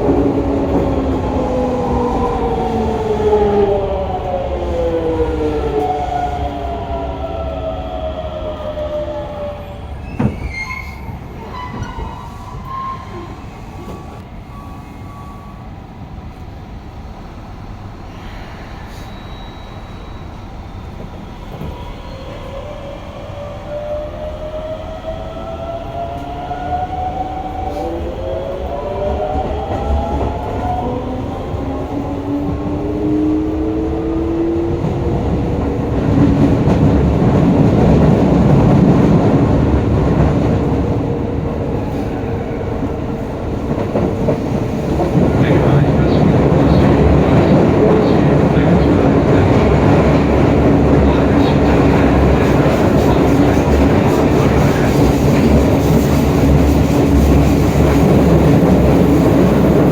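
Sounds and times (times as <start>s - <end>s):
rail rumble: 16.8s - 59.9s.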